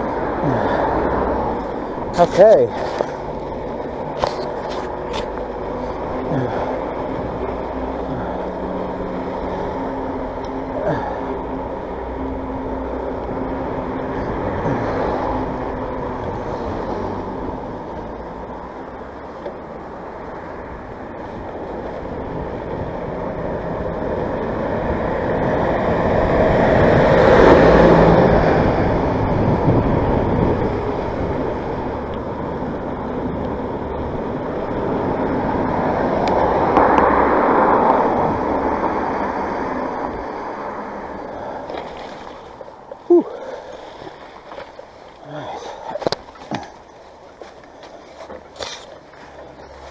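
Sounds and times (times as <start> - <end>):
bike tyres in wet ground: 0.0 - 49.9
wind over microphone: 21.3 - 42.3.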